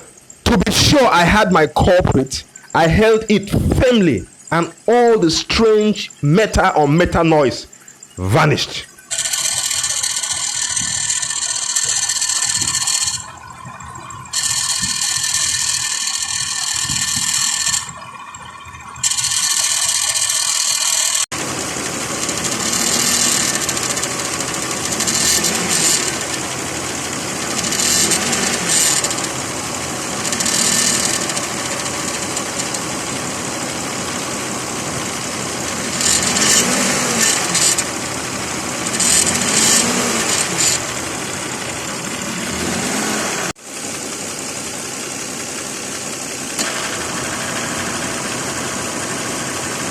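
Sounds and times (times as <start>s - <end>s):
car engine running: 19.0s - 49.9s.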